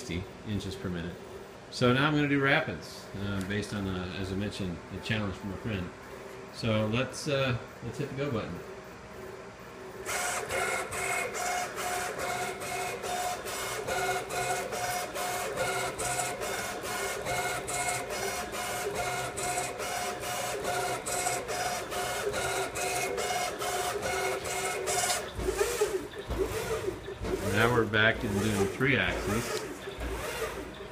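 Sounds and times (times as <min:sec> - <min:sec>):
servo motors whining: 0:10.0 - 0:30.9.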